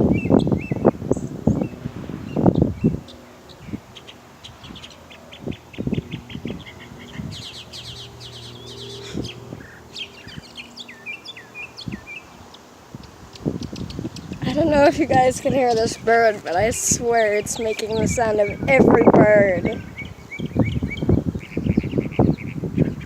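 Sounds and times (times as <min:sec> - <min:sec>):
mockingbird singing: 0:00.0 - 0:23.0.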